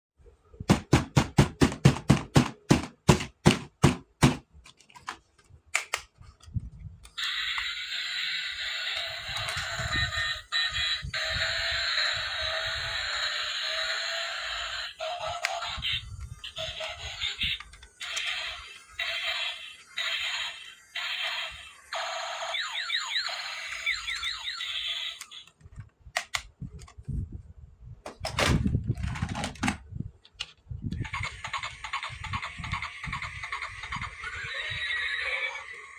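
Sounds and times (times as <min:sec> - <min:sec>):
sharp clicks: 0:05.7 - 0:06.1
toy electronic sound effect: 0:07.1 - 0:25.5, 0:31.0 - 0:35.9.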